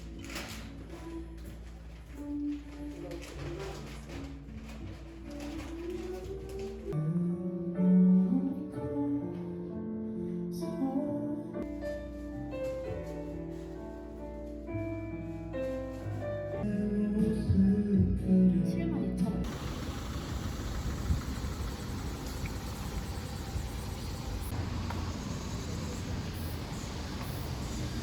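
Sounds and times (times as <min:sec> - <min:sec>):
gentle song with guitar and piano: 0:00.0 - 0:19.5.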